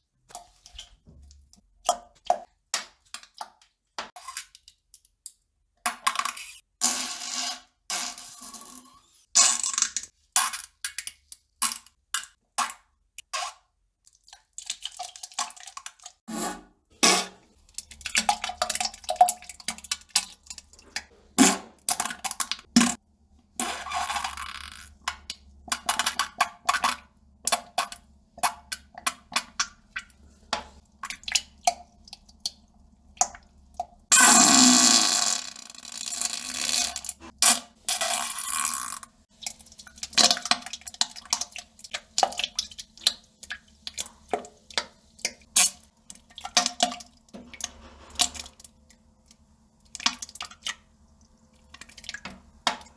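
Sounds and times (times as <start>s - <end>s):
drips and plops into water: 17.6s - 21.1s, 25.0s - 34.1s, 39.3s - 52.9s.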